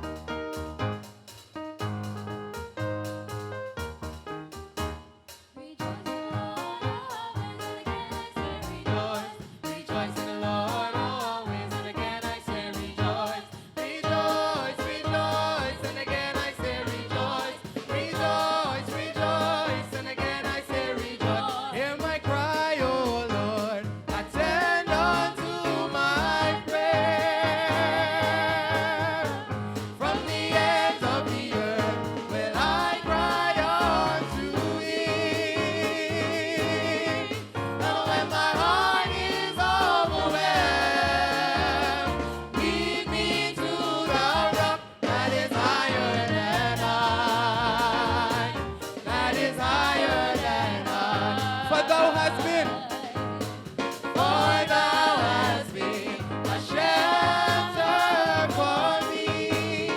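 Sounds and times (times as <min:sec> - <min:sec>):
stepping bass accompaniment: 0:00.0 - 0:05.2, 0:05.8 - 0:13.4, 0:14.0 - 0:59.9
choir singing gospel in harmony: 0:05.3 - 0:59.9.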